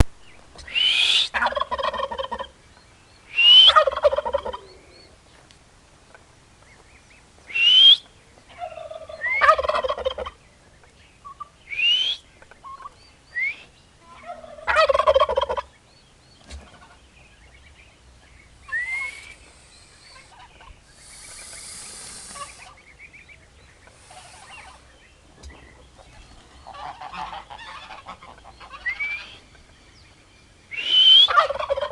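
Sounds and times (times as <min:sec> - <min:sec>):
turkey gobbling: 0:00.6 - 0:02.6, 0:03.5 - 0:05.0, 0:07.7 - 0:10.4, 0:11.2 - 0:13.0, 0:14.0 - 0:15.8, 0:16.4 - 0:17.8, 0:18.6 - 0:23.1, 0:23.8 - 0:29.6, 0:30.8 - 0:31.9.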